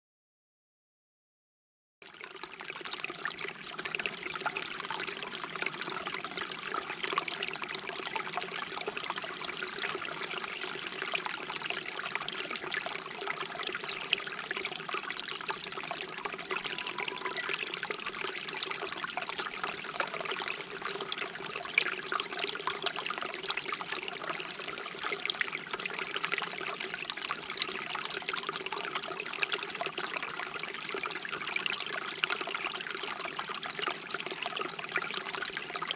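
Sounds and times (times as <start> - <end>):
stream babbling over stones: 3.8 - 24.6.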